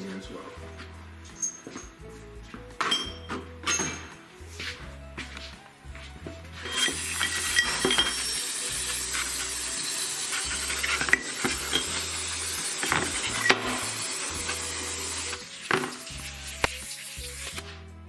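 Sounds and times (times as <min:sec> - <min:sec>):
metal parts clinking: 0:01.3 - 0:01.9, 0:02.8 - 0:04.1
cleaning jet spraying hiss: 0:06.6 - 0:17.6.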